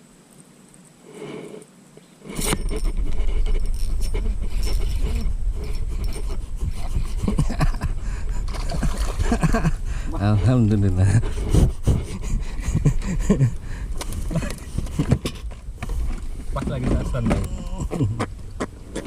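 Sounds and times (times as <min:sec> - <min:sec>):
clattering and scraping handling noise: 0:01.2 - 0:06.4, 0:14.0 - 0:17.5.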